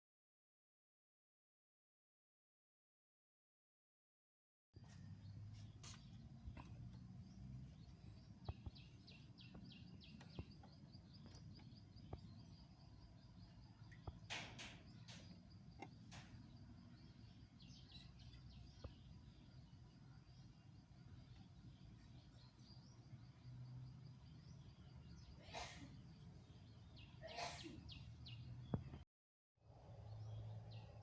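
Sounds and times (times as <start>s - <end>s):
birds chirping: 4.8s - 29.0s.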